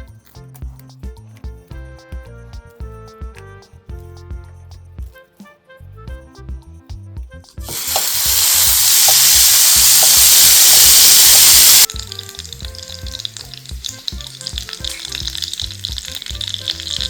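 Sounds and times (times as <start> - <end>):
background music with beat: 0.0 - 7.8, 11.9 - 17.0
food sizzling on hot plates: 7.6 - 17.0.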